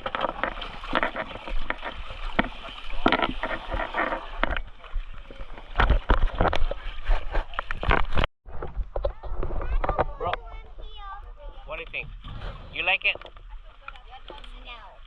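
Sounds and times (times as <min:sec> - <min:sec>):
kayak and paddles knocking: 0:00.0 - 0:15.0.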